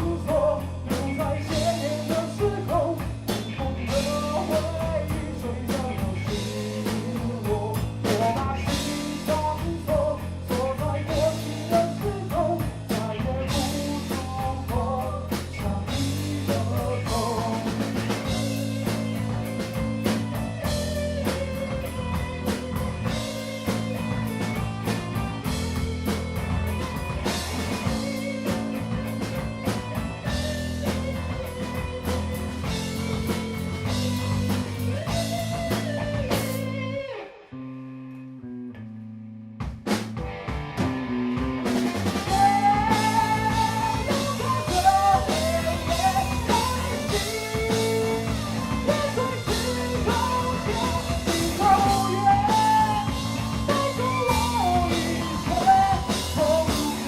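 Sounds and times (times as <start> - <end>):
rock band playing: 0.0 - 38.9, 39.5 - 57.0
bending guitar melody line: 0.0 - 57.0.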